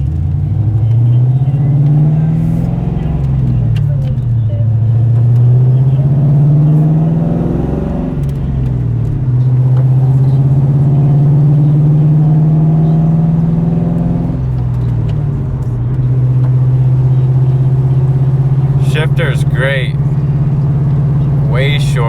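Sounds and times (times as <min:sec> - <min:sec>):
car engine accelerating: 0:00.0 - 0:22.0.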